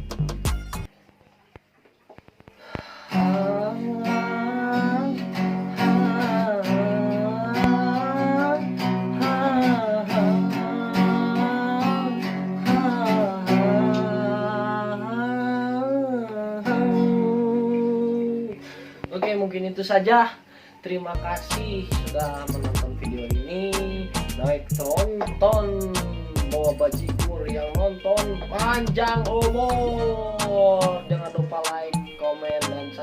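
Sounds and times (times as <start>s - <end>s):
acoustic guitar strumming: 3.0s - 19.4s, 21.2s - 33.0s
gliding melody line: 21.2s - 33.0s.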